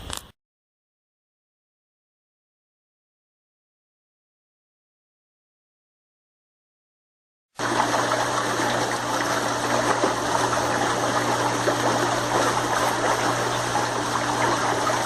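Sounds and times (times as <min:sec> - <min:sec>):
washing machine pump running: 0:07.6 - 0:15.0
water rushing: 0:07.6 - 0:15.0.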